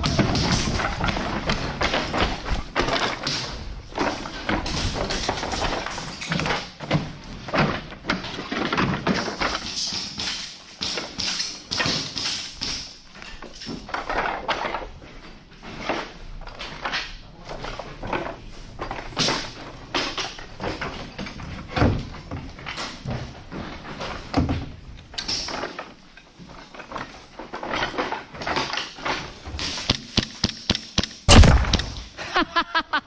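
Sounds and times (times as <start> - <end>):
knocks and scrapes: 0.0 - 32.2
footsteps: 29.7 - 32.2.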